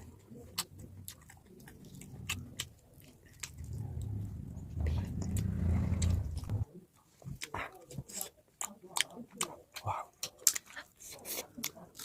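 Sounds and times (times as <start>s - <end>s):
person chewing with smacking: 0.0s - 6.6s, 7.2s - 12.0s
low rumble: 3.3s - 6.7s.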